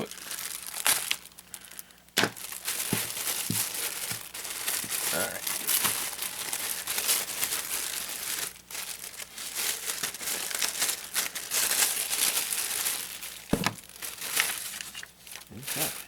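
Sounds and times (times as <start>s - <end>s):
plastic and paper crinkling: 0.0s - 16.0s.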